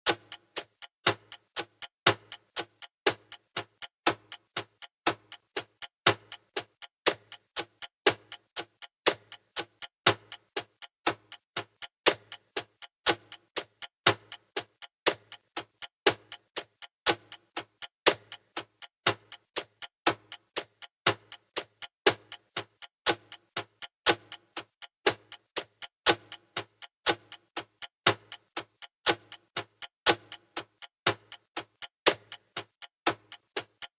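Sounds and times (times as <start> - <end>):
clock ticking: 0.0 - 33.9.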